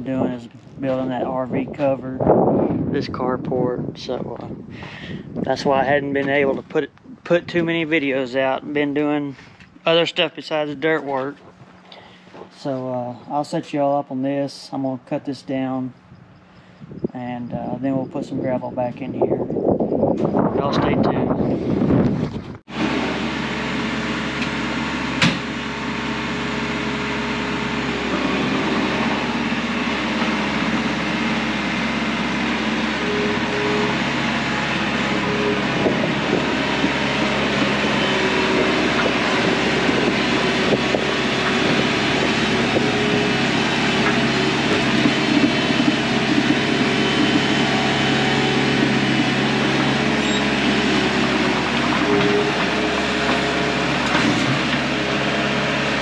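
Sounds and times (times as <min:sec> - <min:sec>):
diesel engine running: 0:00.0 - 0:56.0.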